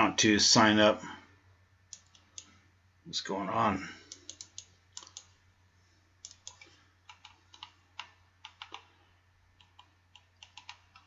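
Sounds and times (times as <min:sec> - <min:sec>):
low steady hum: 0:00.0 - 0:11.0
typing on a keyboard: 0:04.2 - 0:05.3, 0:06.2 - 0:08.9, 0:09.6 - 0:11.0.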